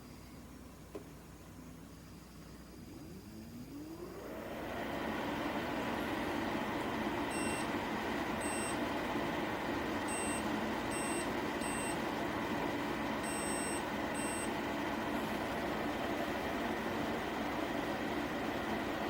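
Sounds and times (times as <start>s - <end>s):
short electronic beeps: 10.1s - 12.0s, 13.2s - 14.5s.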